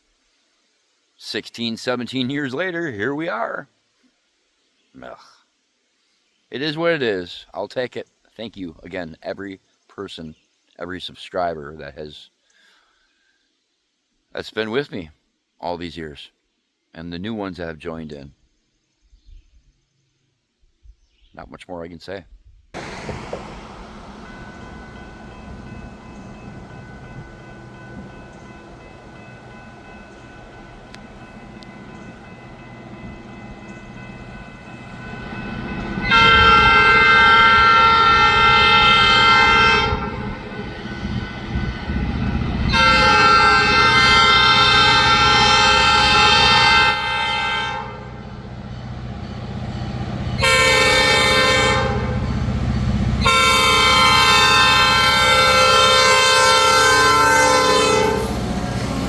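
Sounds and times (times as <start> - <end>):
locomotive horn blasts: 22.8 - 48.3, 50.3 - 52.4, 53.2 - 58.8
train rumbling: 22.8 - 59.0.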